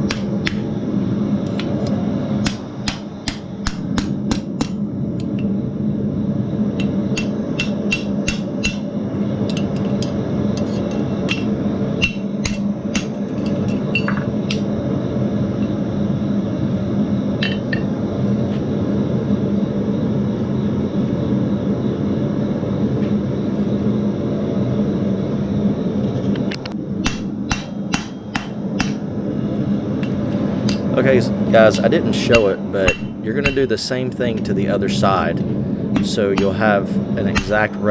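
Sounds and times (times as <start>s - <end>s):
hammer striking steel on anvil: 0.0s - 0.6s, 2.4s - 5.5s, 6.8s - 8.9s, 9.5s - 14.7s, 17.4s - 17.9s, 27.0s - 29.0s, 31.6s - 33.8s, 36.0s - 37.8s
loud steady drone: 0.0s - 37.9s.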